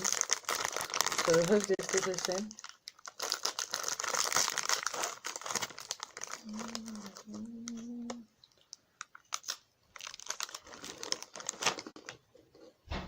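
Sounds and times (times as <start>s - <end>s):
plastic snack packet crinkling: 0.0s - 12.7s
closed-mouth humming: 6.4s - 8.4s.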